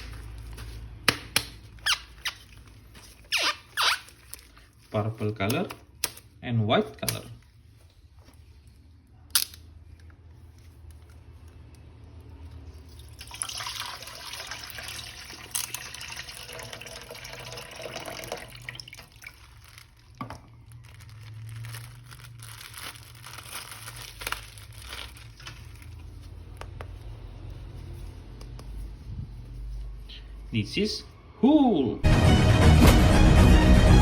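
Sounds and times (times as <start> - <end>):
water running from a tap: 13.0 - 19.4.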